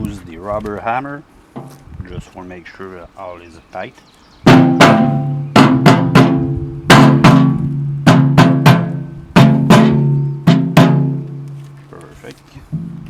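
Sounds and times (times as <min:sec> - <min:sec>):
rubber mallet knocking steel: 0:04.5 - 0:11.6, 0:12.7 - 0:13.0.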